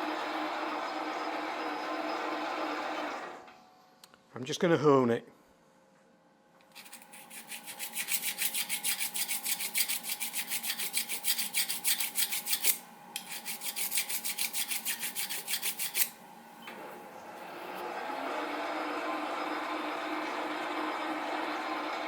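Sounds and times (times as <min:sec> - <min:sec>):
hone scraping on metal tool: 0:06.7 - 0:16.2.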